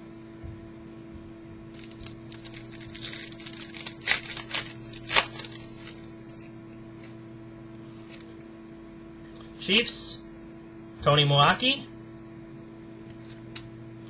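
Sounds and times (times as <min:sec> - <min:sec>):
cards rustling and sliding: 0:01.7 - 0:07.2.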